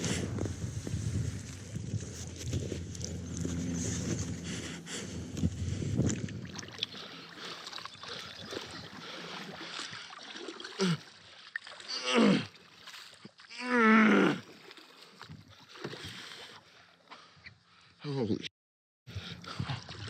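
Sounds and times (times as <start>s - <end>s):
water sloshing: 0.0s - 13.5s, 19.2s - 20.0s.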